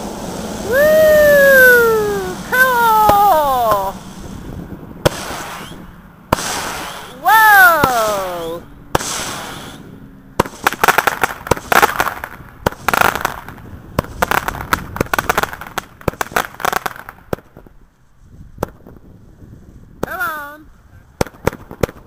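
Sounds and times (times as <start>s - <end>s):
firework bang: 0.0s - 17.7s
fireworks popping and crackling: 0.0s - 19.1s, 21.0s - 22.0s.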